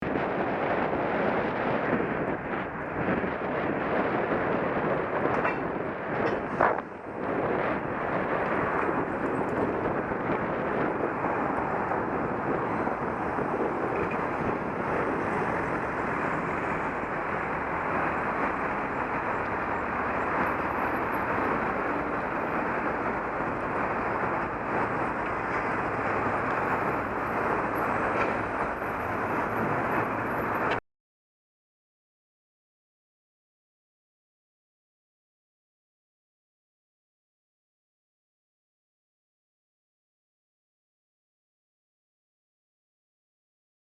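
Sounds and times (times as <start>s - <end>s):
steady road traffic: 0.0s - 30.8s.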